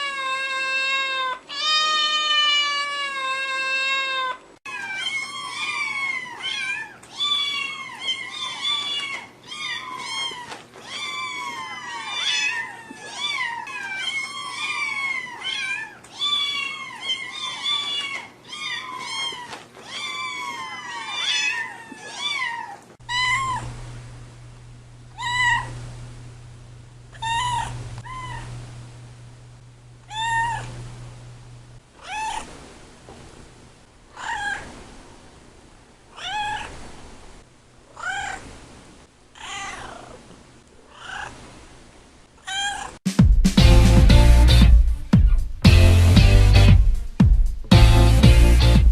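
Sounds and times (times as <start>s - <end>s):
cats meowing: 0.0s - 23.8s, 25.1s - 25.8s, 27.2s - 28.6s, 30.1s - 30.8s, 32.0s - 32.5s, 34.1s - 34.8s, 36.2s - 36.8s, 37.9s - 38.6s, 39.4s - 40.3s, 40.9s - 41.4s, 42.4s - 43.0s
low steady hum: 23.0s - 43.0s.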